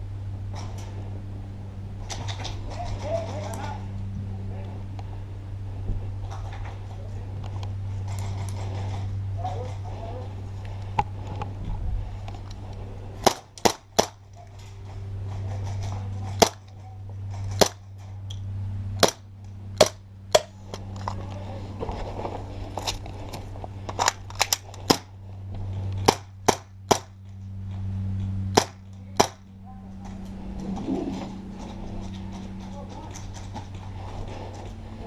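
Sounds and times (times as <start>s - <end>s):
airsoft gun shots: 16.4s - 16.6s, 17.5s - 17.8s, 19.0s - 19.2s, 26.0s - 27.1s, 28.5s - 29.4s.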